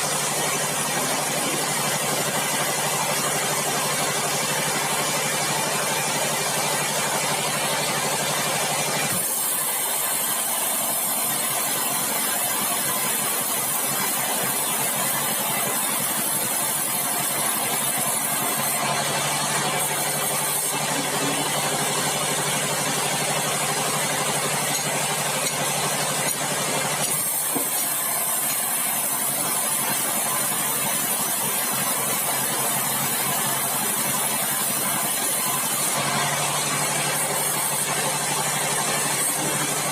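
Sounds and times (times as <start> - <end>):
bandsaw running: 0.0 - 39.9
machine hum: 16.7 - 39.9.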